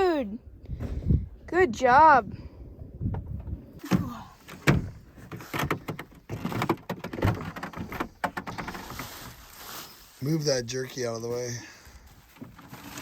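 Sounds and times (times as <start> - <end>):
knocks and clunks of handled objects: 3.0 - 9.5, 12.1 - 13.0
rustling: 4.5 - 13.0.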